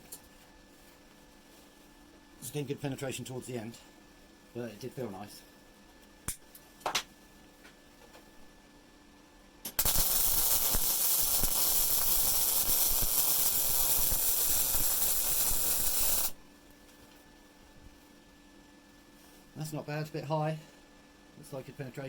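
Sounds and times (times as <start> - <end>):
welding arc crackling and hissing: 9.7 - 16.4.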